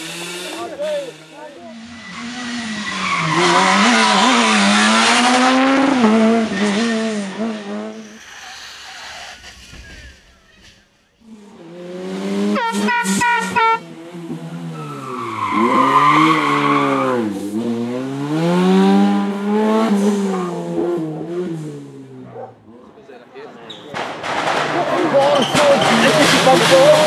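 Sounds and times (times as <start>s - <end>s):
rally car engine revving: 0.0s - 8.4s, 11.2s - 23.0s, 23.7s - 27.0s
tyres squealing: 14.7s - 17.3s, 23.6s - 27.0s.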